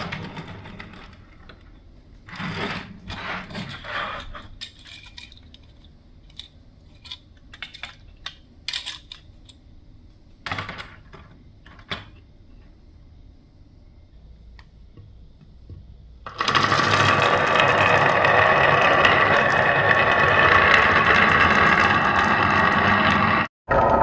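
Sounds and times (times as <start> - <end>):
marbles rolling on wood: 16.2 - 24.0.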